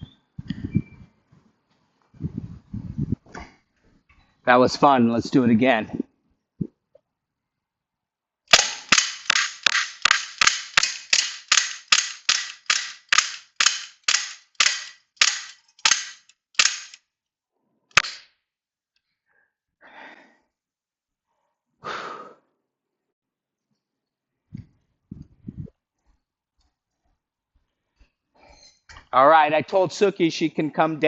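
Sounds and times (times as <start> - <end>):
bb pistol shots: 8.5 - 17.0, 17.9 - 18.2.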